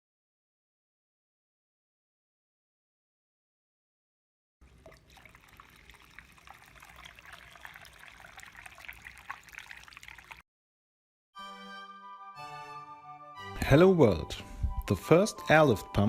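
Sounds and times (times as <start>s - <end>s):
water trickling and spluttering: 4.6s - 10.4s
music: 11.4s - 16.0s.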